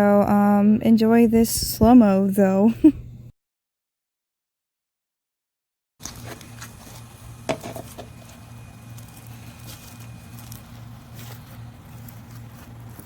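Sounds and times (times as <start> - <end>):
steady low hum: 0.0 - 3.3, 6.0 - 13.0.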